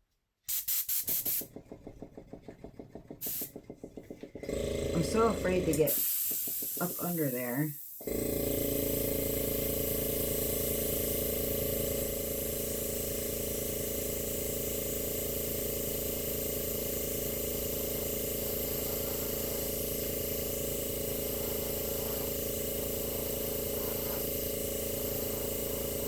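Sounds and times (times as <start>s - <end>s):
airbrush air hissing: 0.5s - 1.5s, 5.9s - 11.6s, 12.2s - 26.0s
small compressor running: 1.0s - 26.0s.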